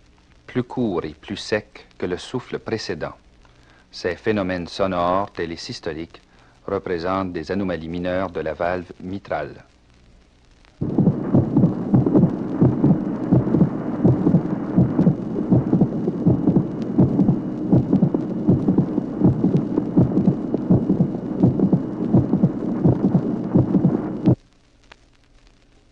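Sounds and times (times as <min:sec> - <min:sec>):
faint steady hum: 0:00.0 - 0:25.9
heartbeats: 0:10.8 - 0:24.4
short dry heart click: 0:10.8 - 0:24.4.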